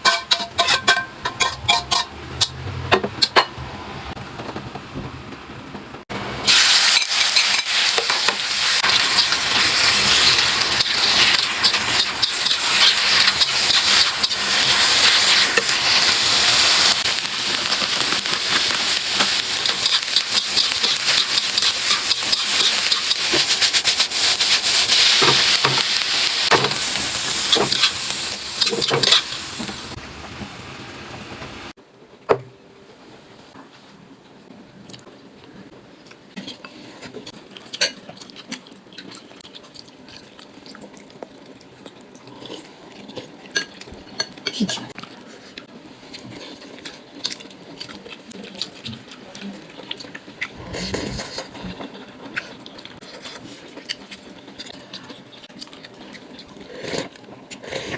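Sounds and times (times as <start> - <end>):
food sizzling in hot oil: 6.4 - 31.7.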